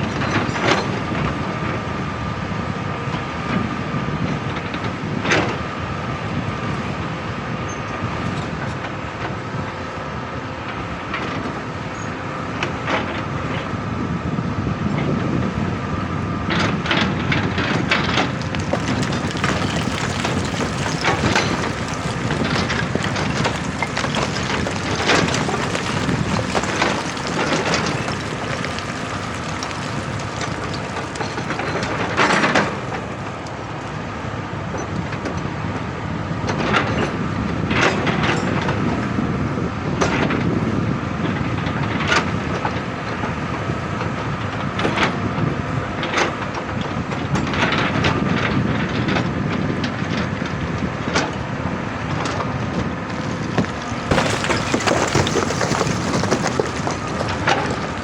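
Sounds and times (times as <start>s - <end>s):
bucket striking rock: 18.2s - 32.9s, 53.6s - 58.0s.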